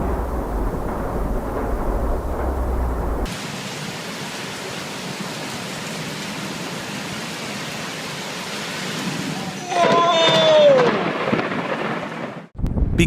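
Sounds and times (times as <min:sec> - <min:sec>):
low rumble: 0:00.0 - 0:03.3
heavy rain hissing: 0:00.0 - 0:09.8.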